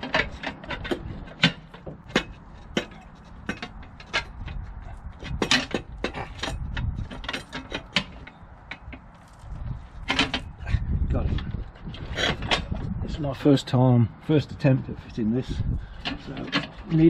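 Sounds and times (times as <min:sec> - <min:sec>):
metal clamp clicking and knocking: 0:00.0 - 0:10.6.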